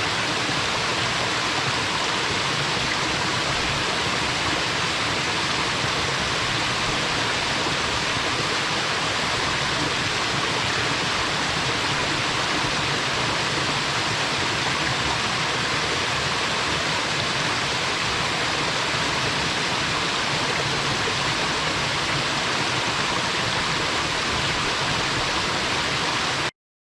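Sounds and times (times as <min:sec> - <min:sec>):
waterfall pouring into pool: 0:00.0 - 0:26.5.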